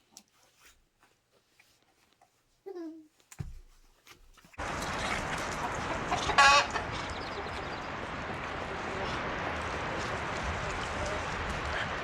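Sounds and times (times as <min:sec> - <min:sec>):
rushing barn noise: 0:04.6 - 0:12.0.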